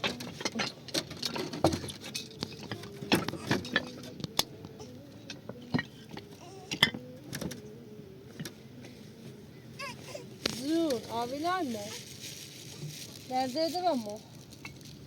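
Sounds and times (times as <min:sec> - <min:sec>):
objects clicking and knocking: 0:00.0 - 0:04.5.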